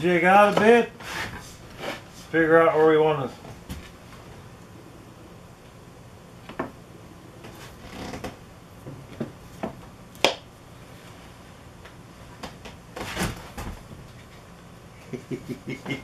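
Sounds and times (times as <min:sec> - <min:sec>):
wood scraping slide: 0:01.0 - 0:02.2.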